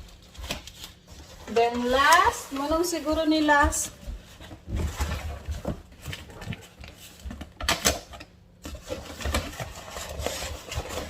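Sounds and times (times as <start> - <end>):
packaging being opened by hand: 0.0 - 2.8, 5.0 - 11.0.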